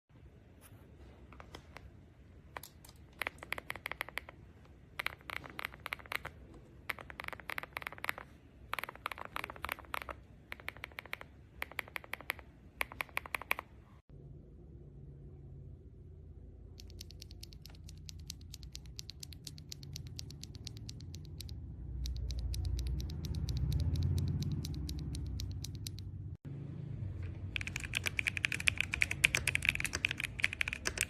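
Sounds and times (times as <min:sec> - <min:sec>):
typing on mechanical keyboard: 0:02.5 - 0:13.7, 0:16.8 - 0:26.1, 0:27.5 - 0:31.0.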